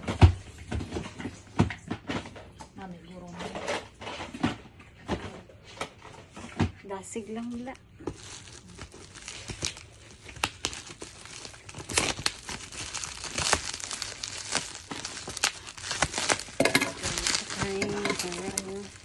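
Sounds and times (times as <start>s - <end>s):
packaging crinkling: 7.4s - 19.0s
packaging tearing: 8.1s - 19.0s.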